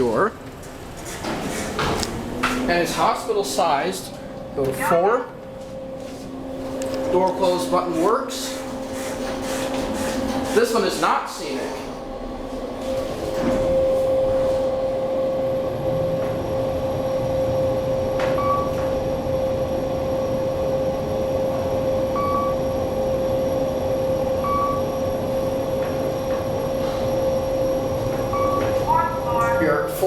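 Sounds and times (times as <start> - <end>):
elevator ride rumble: 0.0 - 9.0, 10.3 - 30.0
elevator motor whine: 1.9 - 8.8, 11.5 - 30.0
short beeps: 18.4 - 18.8, 22.2 - 22.6, 24.4 - 25.0, 28.3 - 29.6.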